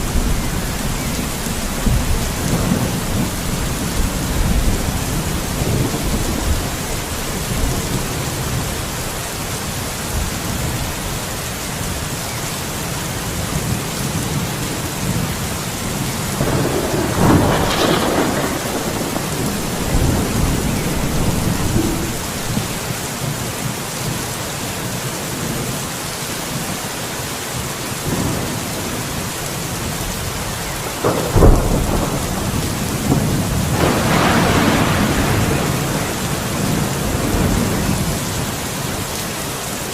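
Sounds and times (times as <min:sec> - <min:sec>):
thunder cracking and rumbling: 0:00.0 - 0:09.1, 0:13.5 - 0:23.0, 0:29.8 - 0:39.1
steady rain falling: 0:00.0 - 0:39.9.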